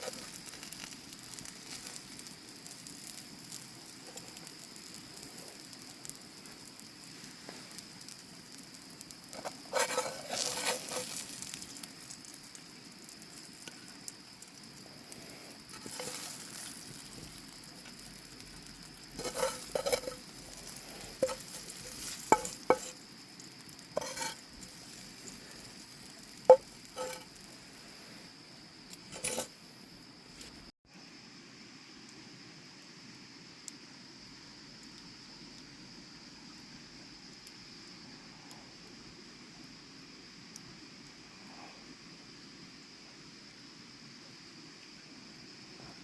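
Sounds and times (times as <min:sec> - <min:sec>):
food sizzling in a pan: 0:00.0 - 0:31.1
utensil scraping and knocking pan: 0:09.4 - 0:11.6, 0:15.7 - 0:16.8, 0:19.2 - 0:23.0, 0:24.0 - 0:25.4, 0:26.5 - 0:27.3, 0:29.1 - 0:29.5.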